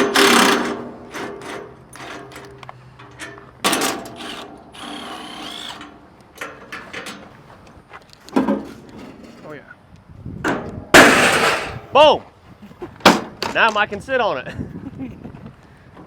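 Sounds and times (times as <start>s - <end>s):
impact wrench running with clicking: 3.7s - 5.9s.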